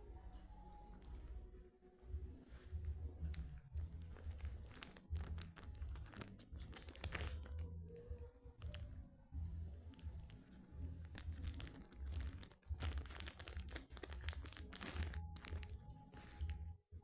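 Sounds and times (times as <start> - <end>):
chewing hard candy: 3.3 - 16.7.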